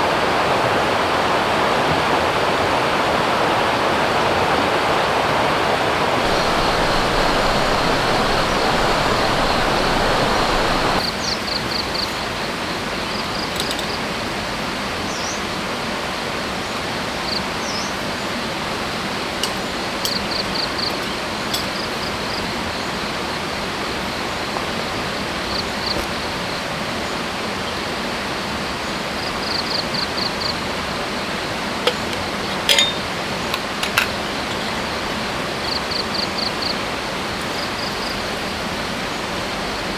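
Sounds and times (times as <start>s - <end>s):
stream rushing: 0.0s - 11.0s.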